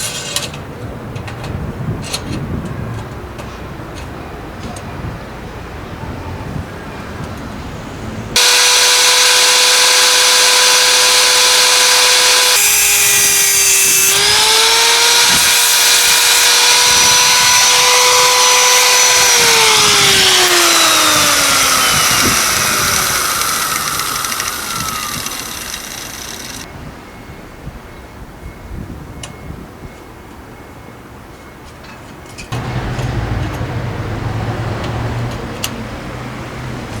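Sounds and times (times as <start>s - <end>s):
electric power tool whining: 8.3s - 26.7s, 32.6s - 33.8s.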